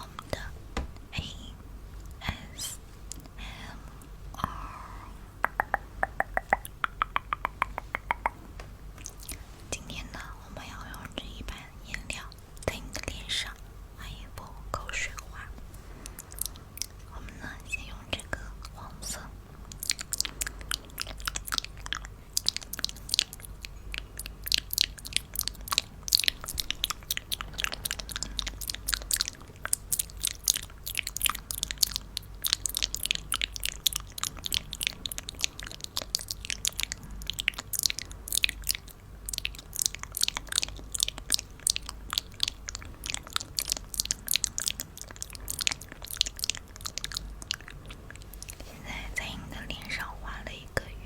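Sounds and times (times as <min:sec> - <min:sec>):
pinata crunching and crackling: 0:19.7 - 0:48.6.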